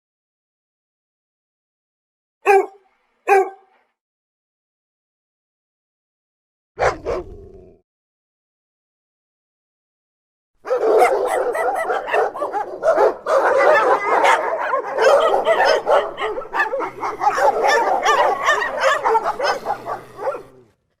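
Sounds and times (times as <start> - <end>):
dog barking and yelping: 2.4 - 3.8, 6.8 - 7.4, 10.6 - 20.7.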